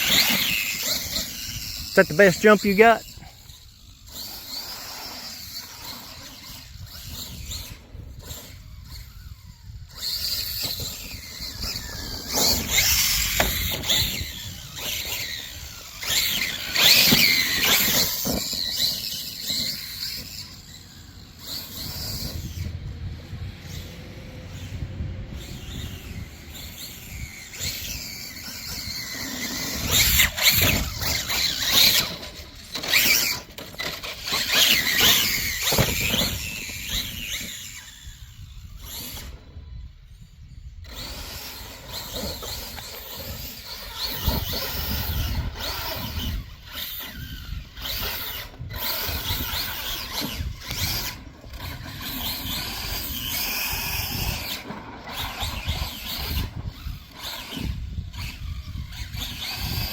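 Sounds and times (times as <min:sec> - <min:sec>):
electric motor whine: 0:00.0 - 0:59.9.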